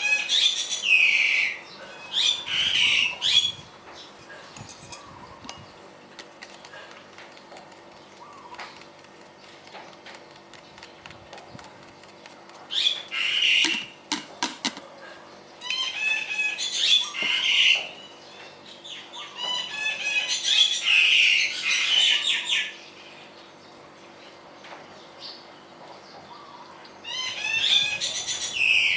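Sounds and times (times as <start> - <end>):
birds chattering and squawking: 0.0 - 28.9.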